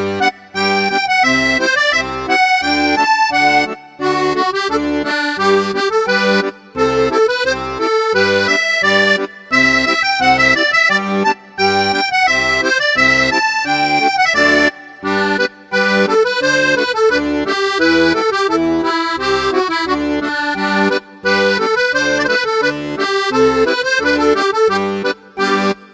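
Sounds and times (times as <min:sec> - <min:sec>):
upbeat accordion music: 0:00.0 - 0:25.9.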